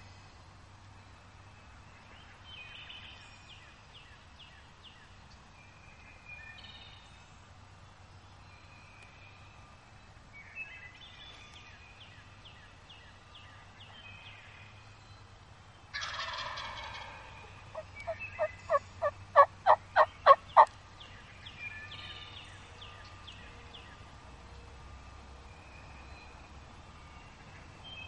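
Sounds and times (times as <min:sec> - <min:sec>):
turkey gobble: 0:16.0 - 0:20.7
turkey yelps: 0:16.0 - 0:20.7.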